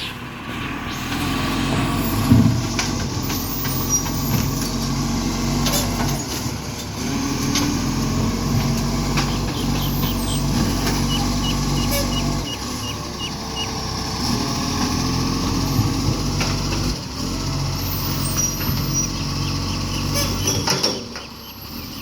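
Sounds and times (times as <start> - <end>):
diesel truck engine running: 0.0 - 22.0.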